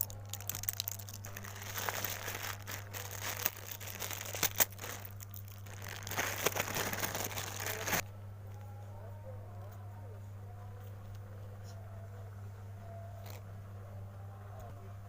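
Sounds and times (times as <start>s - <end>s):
packaging crinkling and rustling: 0.0s - 8.0s
steady low hum: 0.0s - 15.0s.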